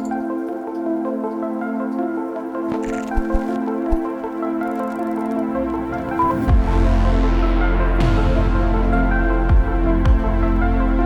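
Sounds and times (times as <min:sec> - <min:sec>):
soft sustained background music: 0:00.0 - 0:11.0.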